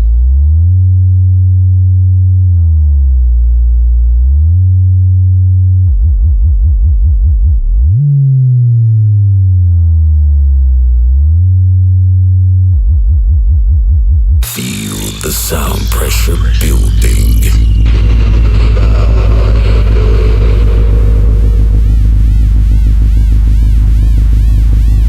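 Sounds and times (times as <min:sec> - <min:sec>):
synthesized bass test tones: 0:00.0 - 0:13.0, 0:14.4 - 0:25.0.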